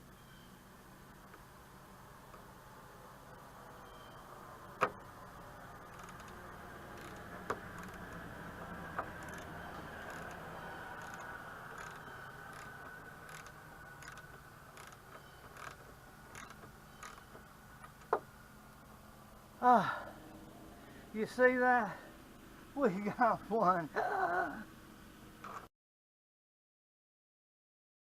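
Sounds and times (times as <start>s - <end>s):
faint steady background noise: 0.0s - 25.7s
light scattered ticks: 5.8s - 18.2s.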